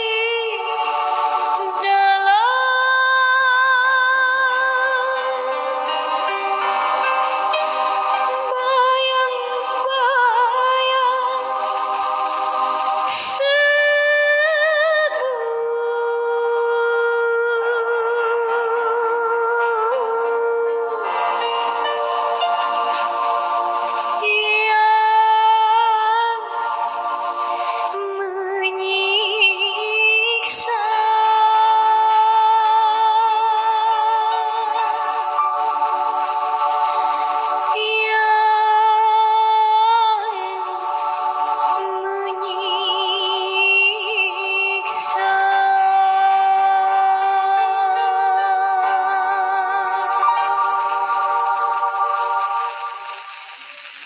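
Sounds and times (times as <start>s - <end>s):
short hiss: 0.0s - 2.4s, 4.6s - 13.6s, 20.9s - 28.1s, 34.2s - 43.7s, 49.8s - 54.0s
music: 0.0s - 54.0s
woman singing with vibrato: 0.0s - 54.0s.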